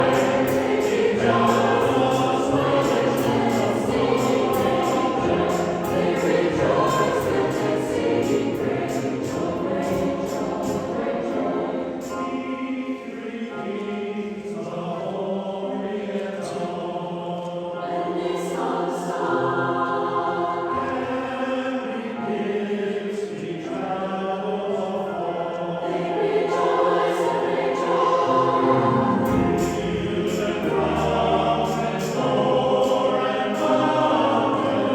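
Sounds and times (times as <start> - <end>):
choir singing in harmony: 0.0 - 34.9.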